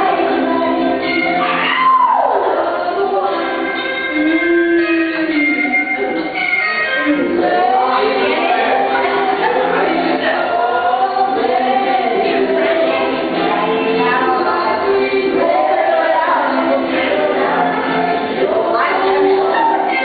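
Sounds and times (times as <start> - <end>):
choir singing sustained notes: 7.4 - 20.0.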